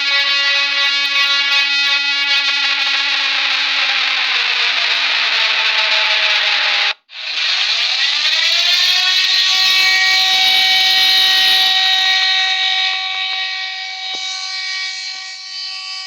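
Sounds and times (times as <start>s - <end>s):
siren wailing: 8.5s - 16.0s.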